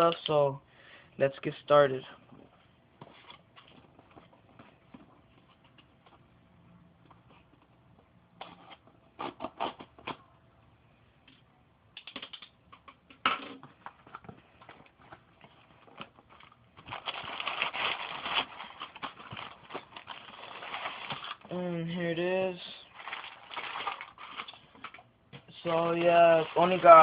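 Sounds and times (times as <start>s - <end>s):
cardboard rustling and crackling: 13.8s - 21.6s, 22.6s - 27.0s.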